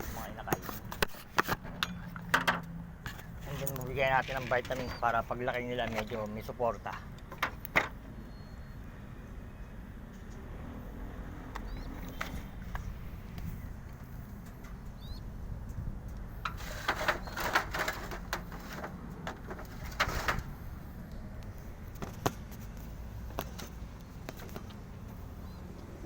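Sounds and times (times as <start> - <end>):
pigeons clattering and fluttering: 3.2 - 8.0, 16.4 - 20.5.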